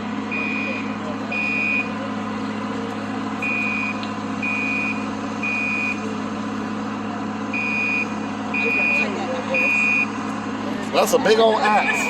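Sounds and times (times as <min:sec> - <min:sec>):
fire alarm beeping: 0:00.3 - 0:01.9.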